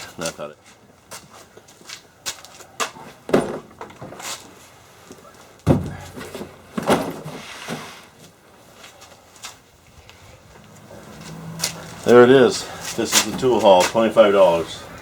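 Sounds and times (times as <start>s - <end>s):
objects knocking and thudding: 3.3s - 4.4s, 5.6s - 8.0s.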